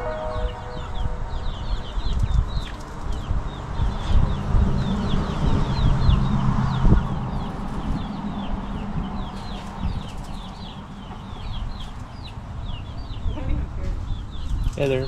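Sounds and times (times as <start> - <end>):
low rumble: 0.0 - 2.6
chickens clucking and chirping: 0.0 - 15.0.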